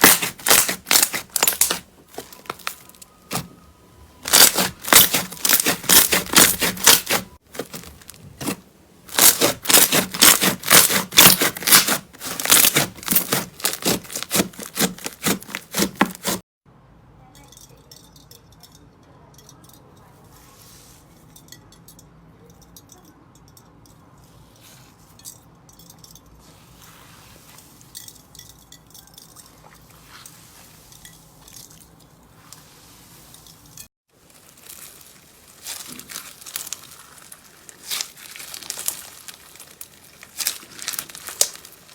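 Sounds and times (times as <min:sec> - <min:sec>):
slime crackling and popping: 0:00.0 - 0:03.5, 0:04.2 - 0:16.4, 0:34.2 - 0:41.9.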